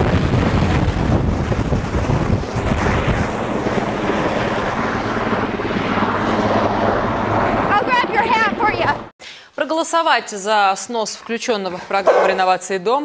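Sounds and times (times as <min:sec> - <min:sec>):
helicopter rumble: 0:00.0 - 0:09.1, 0:11.8 - 0:12.6
rotor downwash wind noise: 0:00.0 - 0:09.1.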